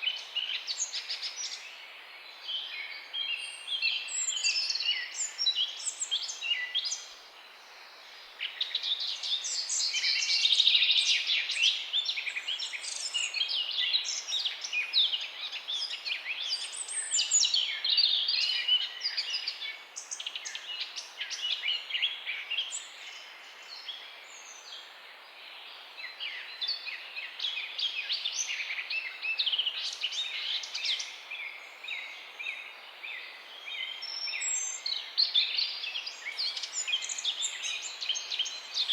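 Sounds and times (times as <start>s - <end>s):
faint background hiss: 0.0s - 38.9s
songbirds chirping and trilling: 0.0s - 38.9s.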